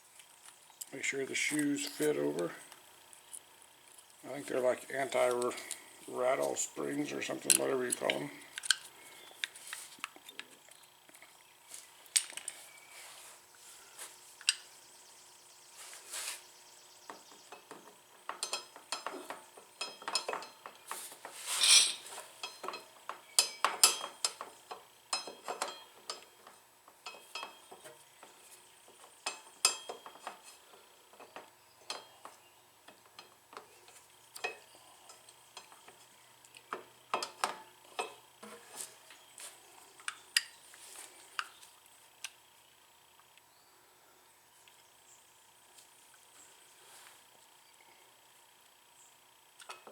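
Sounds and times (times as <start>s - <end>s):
metal scrape: 21.3s - 22.2s.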